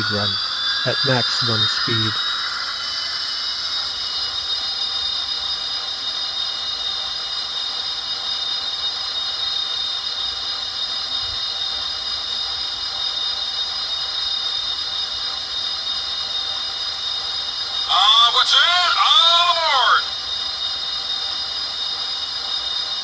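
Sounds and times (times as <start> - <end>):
even hiss: 0.0 - 3.8
high turbine whine: 0.0 - 23.0.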